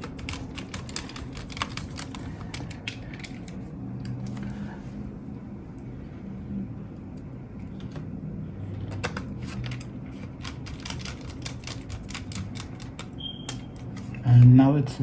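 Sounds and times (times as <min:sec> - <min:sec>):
steady low hum: 0:00.0 - 0:15.0.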